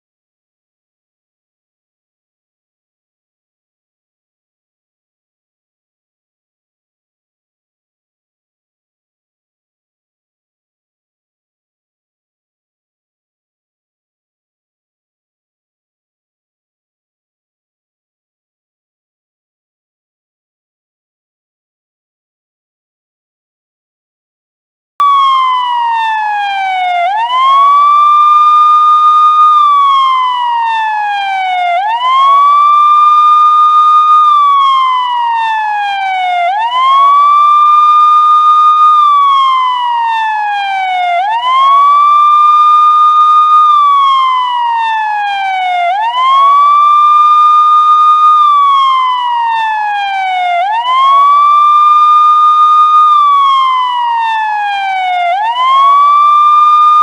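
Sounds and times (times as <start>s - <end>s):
police siren wailing: 25.0s - 57.0s.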